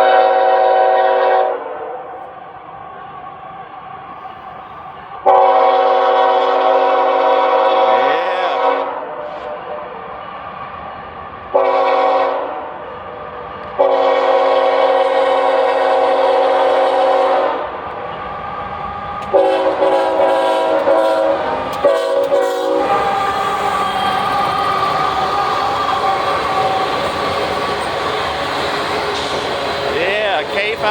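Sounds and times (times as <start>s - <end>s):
locomotive horn blasts: 0.0s - 2.0s, 5.3s - 9.8s, 11.5s - 12.7s, 13.8s - 17.7s, 19.2s - 24.4s
train rumble: 0.0s - 30.9s.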